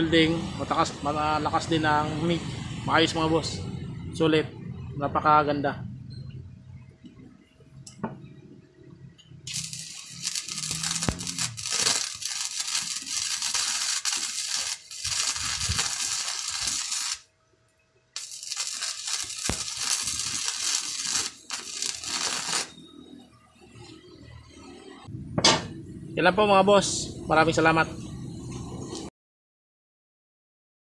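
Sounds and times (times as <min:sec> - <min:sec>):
welding arc crackling: 0:09.4 - 0:17.3, 0:18.2 - 0:22.8, 0:28.8 - 0:29.1.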